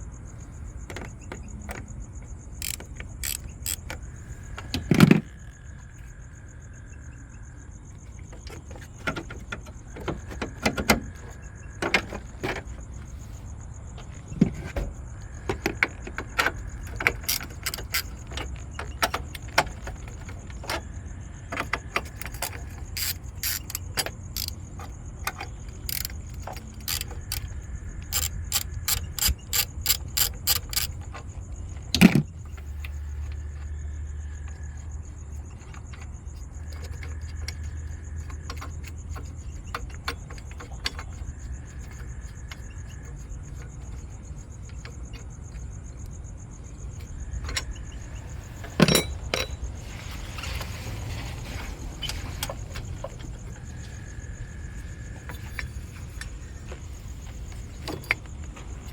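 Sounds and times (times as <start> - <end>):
ratchet wrench clicking: 2.6 - 4.1, 16.6 - 18.5, 22.0 - 24.7, 25.3 - 31.1.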